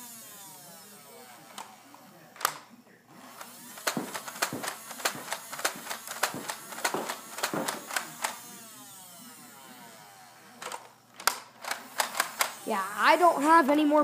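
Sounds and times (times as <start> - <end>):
toy blaster mechanical clicks: 2.4 - 2.7, 3.4 - 8.6, 10.6 - 12.8
electric motor whining: 3.1 - 13.7.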